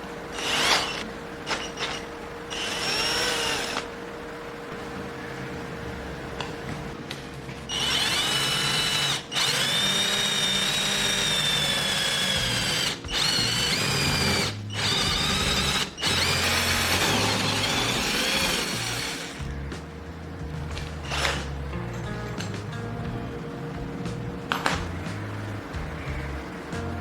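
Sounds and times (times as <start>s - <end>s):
power tool high whine: 0.0s - 4.6s, 7.7s - 19.4s.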